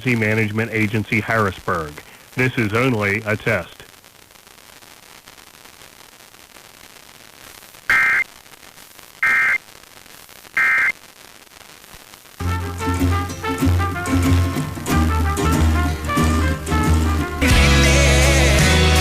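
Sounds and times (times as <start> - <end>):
radio music: 0.0 - 4.0, 7.9 - 8.5, 9.2 - 19.0
faint radio hiss: 0.0 - 17.4.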